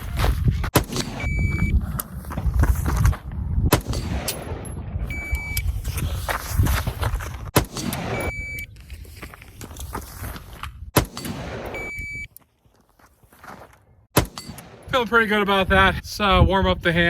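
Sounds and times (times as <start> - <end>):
rumbling of movement and wind: 0.0 - 17.0
rifle shots: 0.8 - 1.4, 3.7 - 4.8, 7.6 - 8.5, 11.0 - 12.0, 14.2 - 15.0
shot timer beep: 1.2 - 1.7, 5.1 - 5.6, 8.1 - 8.7, 11.7 - 12.3.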